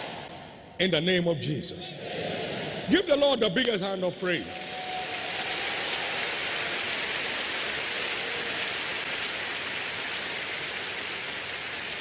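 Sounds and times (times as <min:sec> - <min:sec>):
congregation applauding: 0:04.0 - 0:12.0.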